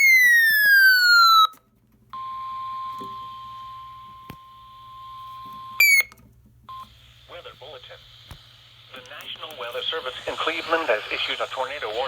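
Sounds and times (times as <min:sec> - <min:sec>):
faint radio hiss: 0:06.8 - 0:12.0.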